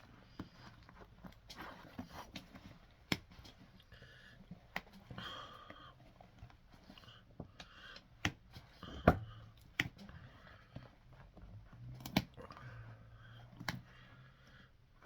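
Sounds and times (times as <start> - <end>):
soft scraping and rustling: 0.0 - 5.2.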